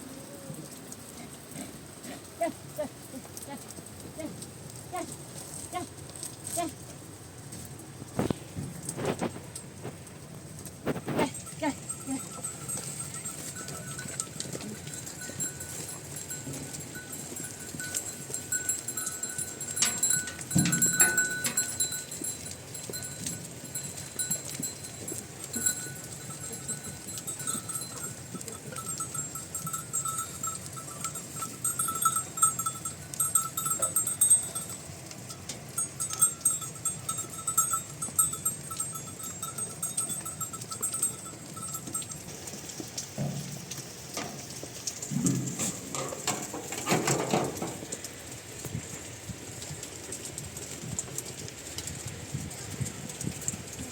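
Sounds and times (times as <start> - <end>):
livestock bells clinking: 11.0 - 43.5.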